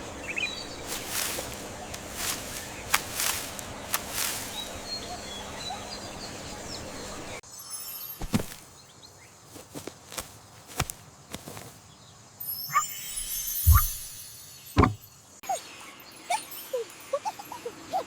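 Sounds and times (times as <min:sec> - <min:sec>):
birds chirping: 0:00.0 - 0:07.4, 0:11.8 - 0:16.7.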